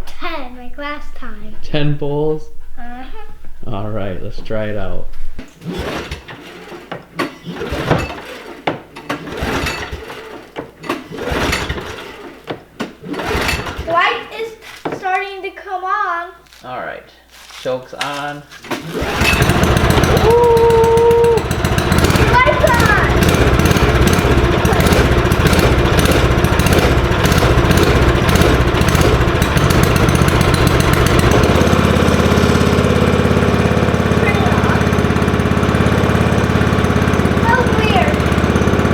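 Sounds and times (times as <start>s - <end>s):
recoil starter rope yanked: 5.4s - 13.9s, 17.4s - 38.8s
snowmobile engine turning over: 5.4s - 15.4s, 17.4s - 38.9s.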